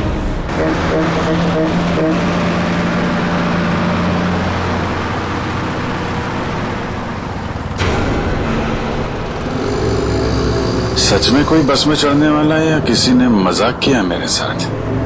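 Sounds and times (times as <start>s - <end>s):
road noise: 0.0s - 15.0s
vehicle engine running: 0.0s - 15.0s.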